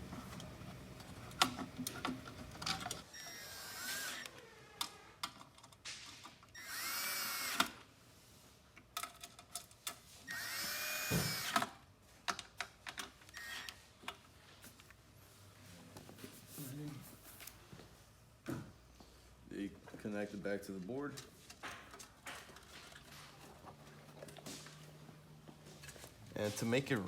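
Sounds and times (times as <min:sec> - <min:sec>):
power drill driving screws: 0:03.1 - 0:04.7, 0:06.5 - 0:07.8, 0:10.2 - 0:11.7, 0:13.3 - 0:13.8.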